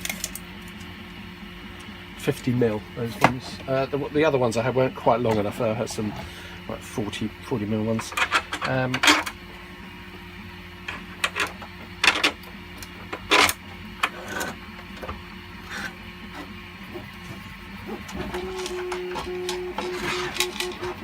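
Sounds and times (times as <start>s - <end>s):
pulsing stepping motor tone: 0.0s - 21.0s
steady machine hum: 0.0s - 21.0s
plastic parts clicking and knocking: 10.9s - 21.0s.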